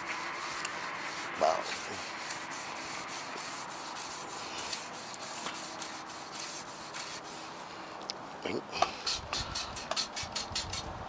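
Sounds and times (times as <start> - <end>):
steel wool scrubbing metal: 0.0 - 7.6.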